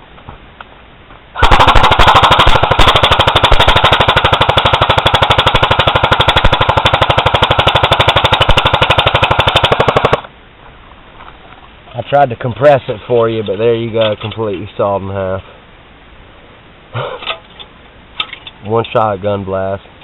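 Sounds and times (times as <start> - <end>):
airsoft rifle automatic fire: 1.4 - 10.3.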